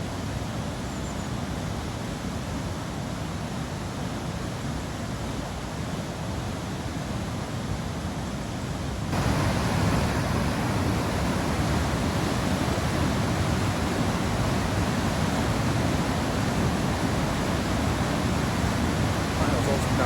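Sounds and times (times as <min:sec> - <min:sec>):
waterfall rushing: 0:09.1 - 0:20.0.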